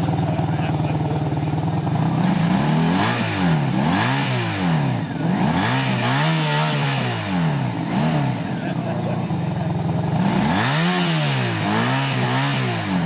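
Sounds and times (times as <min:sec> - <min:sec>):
two-stroke motorcycle engine revving: 0:00.0 - 0:13.0.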